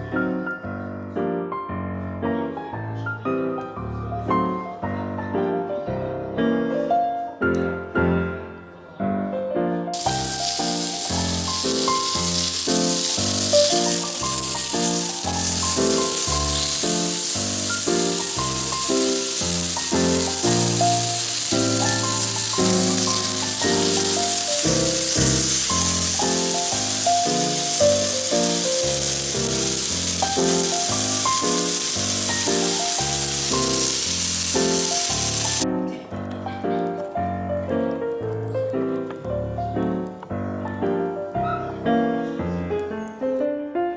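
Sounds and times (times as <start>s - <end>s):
background piano music: 0.0s - 43.9s
food sizzling in a pan: 10.0s - 35.7s.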